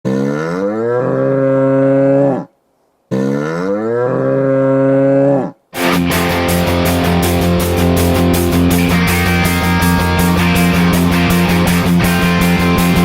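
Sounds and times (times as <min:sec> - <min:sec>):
loud rock music with guitar: 0:05.8 - 0:13.0.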